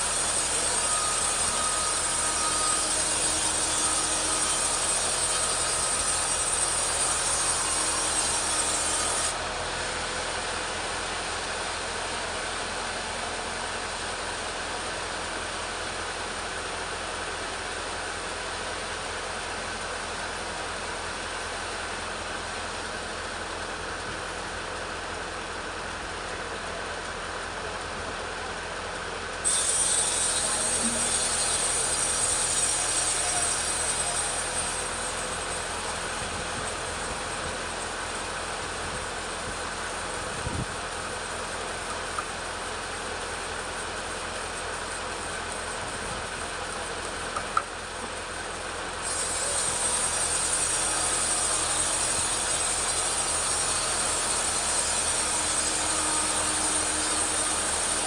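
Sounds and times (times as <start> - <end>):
chainsaw cutting log: 0.0 - 9.4, 29.5 - 38.1, 49.0 - 58.0.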